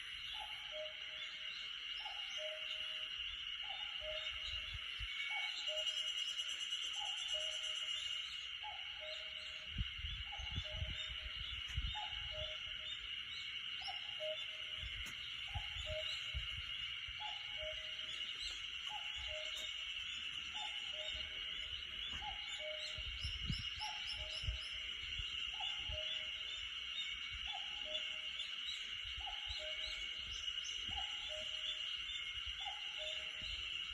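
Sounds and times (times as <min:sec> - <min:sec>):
faint bird chirps: 0:00.0 - 0:33.9
steady high hiss-like drone: 0:00.0 - 0:33.9
cuckoo calling: 0:00.3 - 0:01.4, 0:13.8 - 0:24.9, 0:32.6 - 0:33.7.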